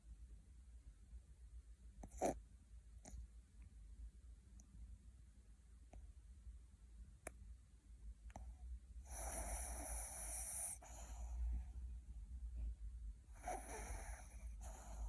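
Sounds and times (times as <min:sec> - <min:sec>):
puppy snoring: 0:02.0 - 0:02.4, 0:09.0 - 0:11.4, 0:13.3 - 0:15.0.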